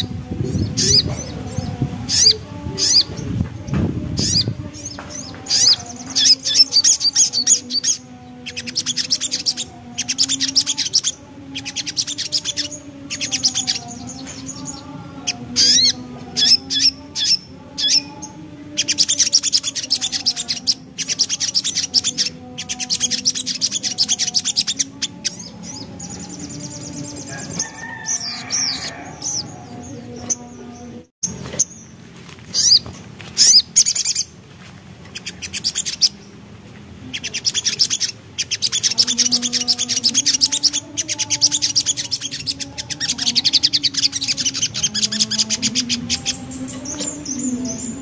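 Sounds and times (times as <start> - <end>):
bird chattering trills: 0.0 - 3.4, 4.1 - 30.6, 31.2 - 34.3, 37.1 - 48.0.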